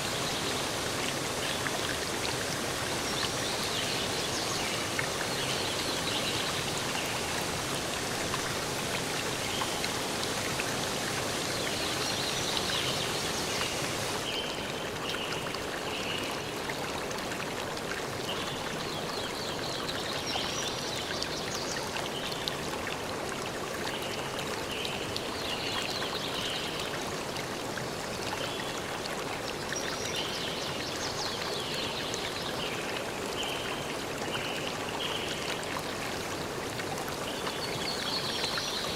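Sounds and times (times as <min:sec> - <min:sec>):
stream flowing: 0:00.0 - 0:38.9.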